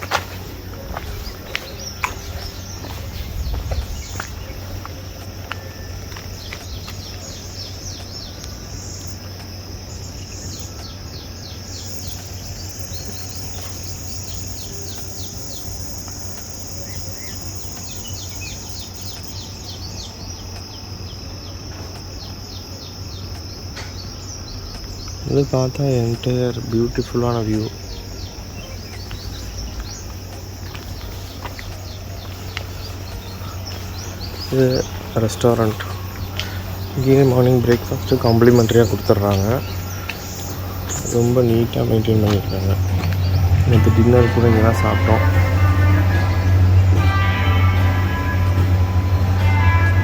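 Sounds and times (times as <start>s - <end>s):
bird calls: 0.0s - 50.0s
insects chirping and trilling: 0.0s - 50.0s
sharp clicks: 3.5s - 9.6s.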